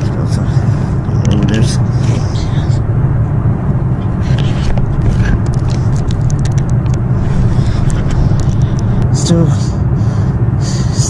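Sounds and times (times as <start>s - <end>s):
airliner engine rumble: 0.0s - 11.0s
faint ticks and rattles: 4.6s - 9.3s.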